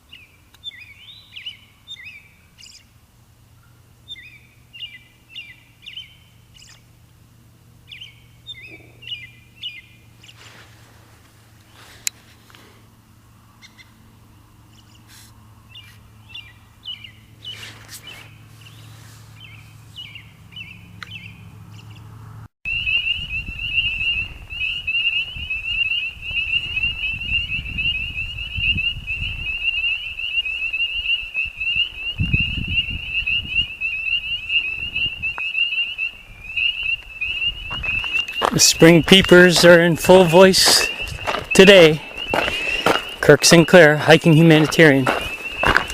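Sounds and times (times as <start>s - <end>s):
chorus of spring peepers: 22.7s - 45.9s
high chirps: 22.7s - 45.9s.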